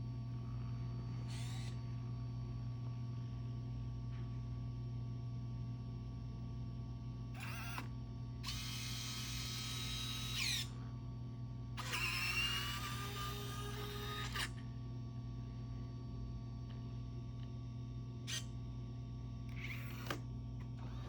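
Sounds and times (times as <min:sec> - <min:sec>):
higher motor whirring: 0:01.2 - 0:01.8, 0:11.8 - 0:14.5
robot vacuum humming: 0:01.2 - 0:01.8, 0:11.8 - 0:14.5, 0:19.5 - 0:20.2, 0:20.8 - 0:21.0.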